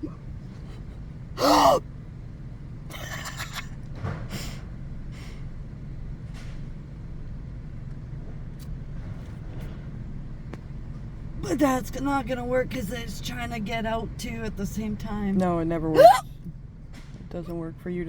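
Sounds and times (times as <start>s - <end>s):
woman hiccupping: 1.4s - 1.8s, 16.0s - 16.4s.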